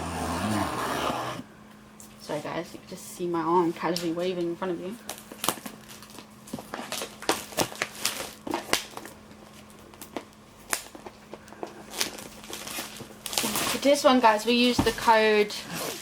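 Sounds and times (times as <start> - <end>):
packaging crinkling and rustling: 3.7 - 16.0.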